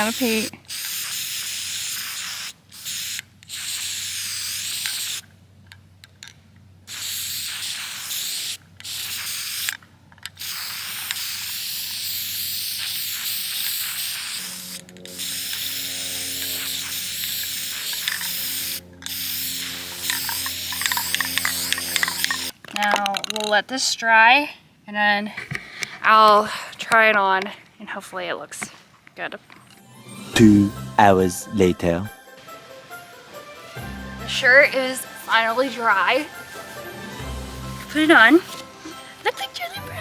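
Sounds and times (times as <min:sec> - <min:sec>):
spray paint can hissing: 0:00.0 - 0:05.3, 0:06.9 - 0:23.5, 0:34.4 - 0:38.7.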